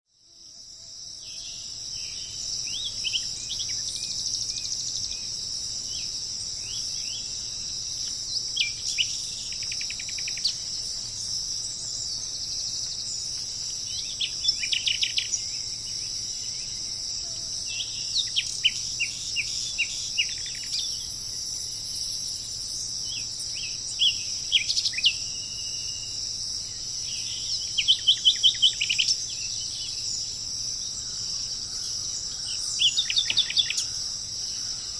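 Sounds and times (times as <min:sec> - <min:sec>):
insects chorus: 0:00.1 - 0:34.9
birds calling: 0:01.4 - 0:17.0, 0:22.6 - 0:34.9.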